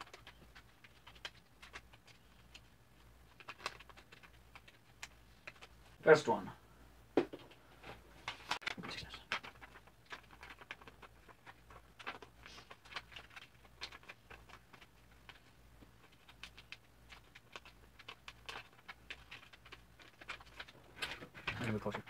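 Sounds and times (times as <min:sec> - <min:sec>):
paper crinkling and creasing: 0:00.0 - 0:05.8, 0:07.9 - 0:22.0.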